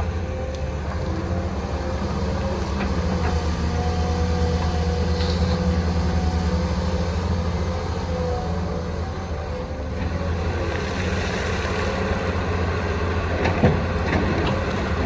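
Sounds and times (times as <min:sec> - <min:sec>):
excavator diesel engine running: 0:00.0 - 0:15.0
brief hiss: 0:05.1 - 0:05.6.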